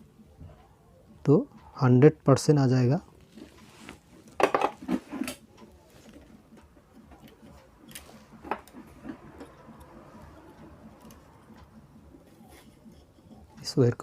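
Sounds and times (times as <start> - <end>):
hands clicking and tapping on wiring: 3.3 - 13.8.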